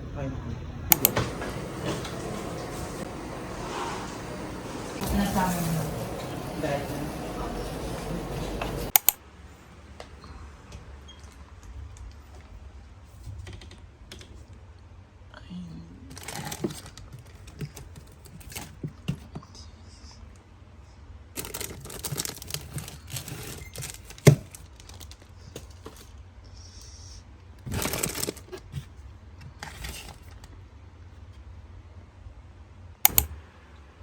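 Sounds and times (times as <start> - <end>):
steady low hum: 0.0 - 13.0
plastic packaging crinkling: 16.1 - 18.8, 21.4 - 26.2, 27.6 - 28.7.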